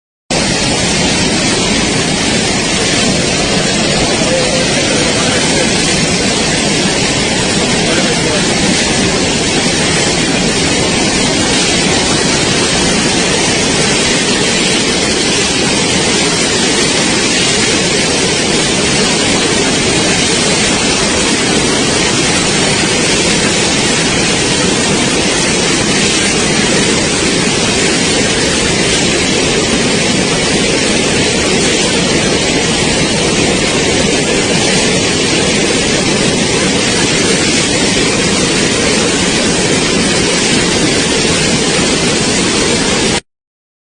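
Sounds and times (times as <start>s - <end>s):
floodwater rushing: 0.3s - 43.2s.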